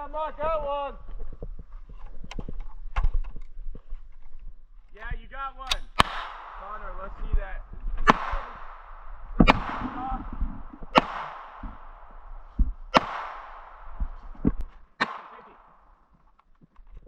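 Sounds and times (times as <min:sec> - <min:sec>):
gunshots with echo: 0:05.7 - 0:07.3, 0:08.0 - 0:16.1.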